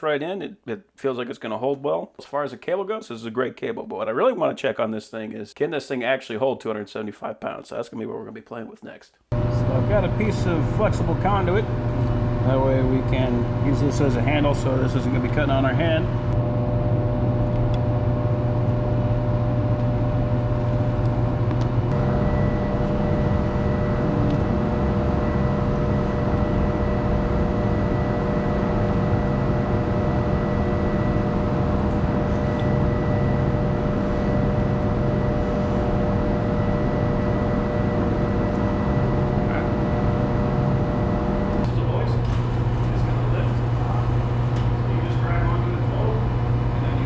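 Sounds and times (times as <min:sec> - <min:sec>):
mechanical drone with low hum: 0:09.3 - 0:47.0
faint high whine: 0:09.4 - 0:47.0.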